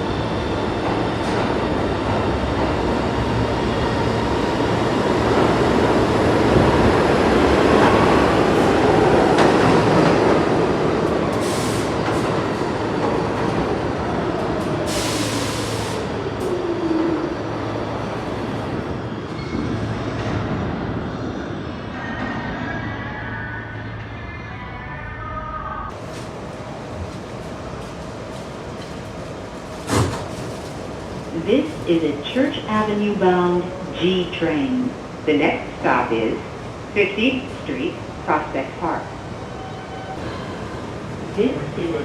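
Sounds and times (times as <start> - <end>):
train wheels rumbling on rail: 0.0 - 22.7, 25.9 - 35.7.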